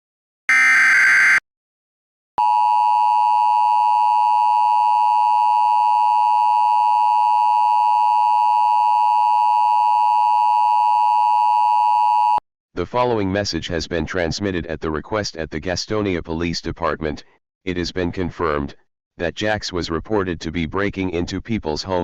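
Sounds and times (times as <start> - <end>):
buzzing data burst: 0.5 - 1.4
steady electronic alert tone: 0.5 - 1.4.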